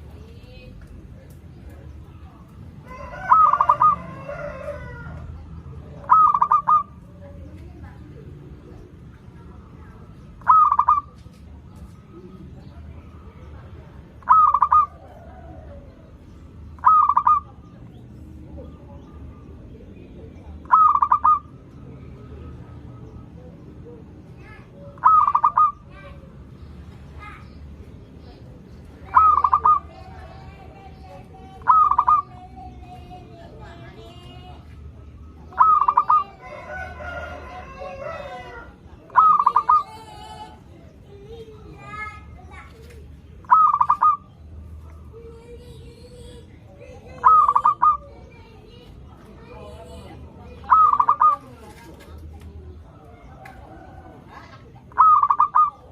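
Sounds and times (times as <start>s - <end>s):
dove cooing: 2.2s - 7.5s, 10.3s - 12.4s, 14.1s - 18.0s, 20.6s - 21.7s, 24.8s - 26.3s, 29.0s - 41.0s, 41.6s - 45.2s, 46.8s - 48.4s, 49.9s - 52.0s, 52.8s - 55.9s
rooster crowing: 2.8s - 5.4s, 36.2s - 38.8s.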